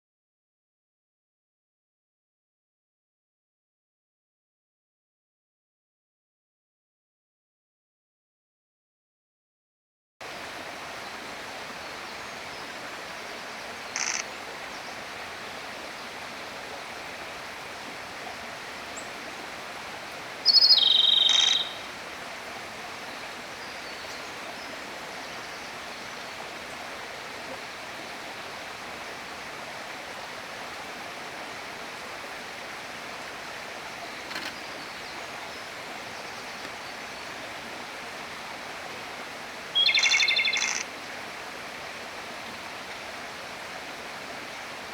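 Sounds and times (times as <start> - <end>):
bird singing trill: 20.4 - 21.9, 39.8 - 40.8.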